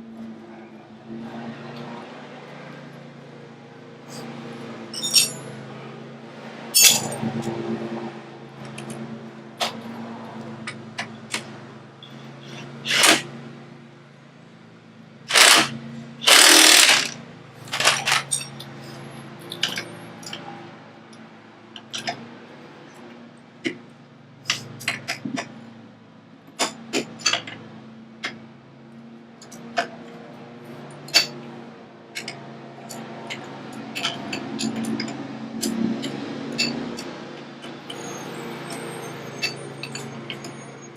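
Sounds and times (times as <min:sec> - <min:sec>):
power tool driving bolts: 0:12.9 - 0:13.3, 0:15.3 - 0:18.4.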